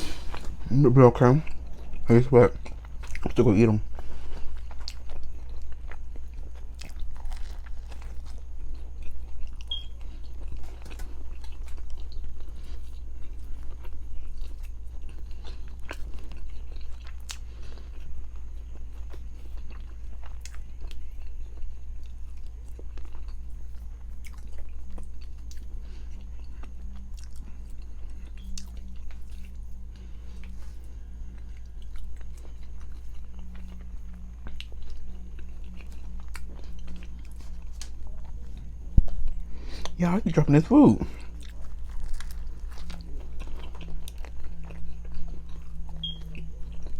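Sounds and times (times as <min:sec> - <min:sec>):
biting and chewing food: 0:00.0 - 0:46.9
steady low hum: 0:00.0 - 0:46.9.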